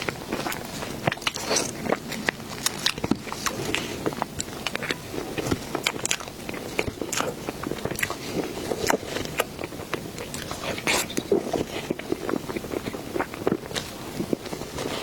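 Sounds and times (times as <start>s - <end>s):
person biting and chewing: 0.0s - 15.0s.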